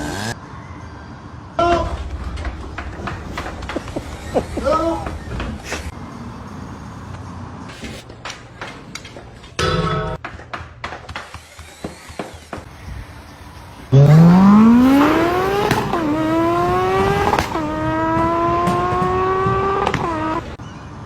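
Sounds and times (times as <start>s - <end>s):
motor revving to high pitch: 0.0s - 0.4s, 13.9s - 20.6s.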